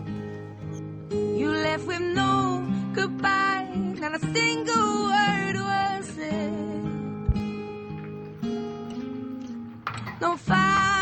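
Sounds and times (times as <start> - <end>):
acoustic guitar: 0.0 - 11.0
person singing: 10.1 - 11.0.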